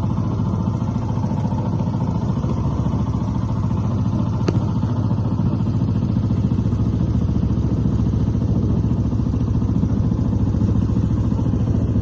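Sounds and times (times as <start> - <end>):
engine running with fast pulsing: 0.0 - 12.0.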